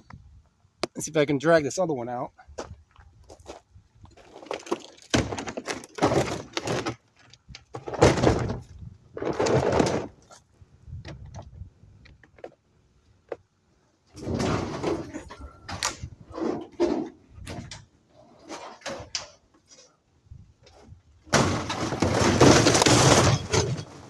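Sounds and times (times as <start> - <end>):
scrap dragged out of dumpster: 7.8 - 10.4, 14.1 - 19.8, 20.7 - 24.0.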